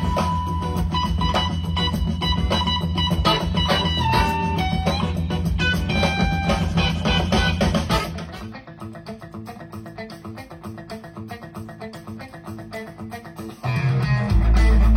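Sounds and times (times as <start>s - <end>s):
bass line: 0.0s - 8.5s, 13.6s - 14.9s
dance band music: 0.0s - 11.7s, 12.4s - 14.9s
plucked guitar notes: 0.0s - 14.9s.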